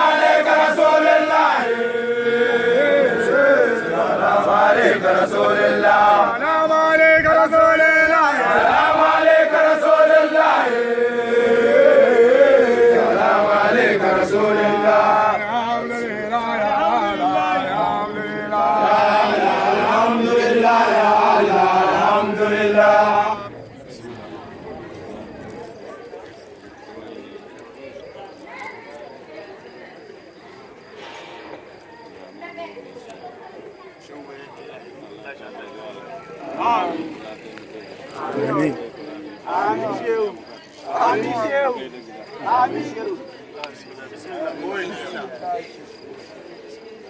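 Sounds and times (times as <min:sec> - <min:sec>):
voices chanting together: 0:00.0 - 0:25.2, 0:35.3 - 0:47.0.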